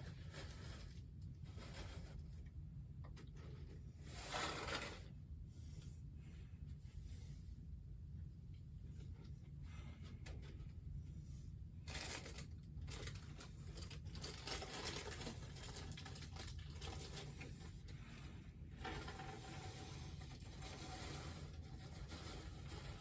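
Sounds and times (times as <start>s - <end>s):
plastic bag crinkling: 11.9s - 17.6s.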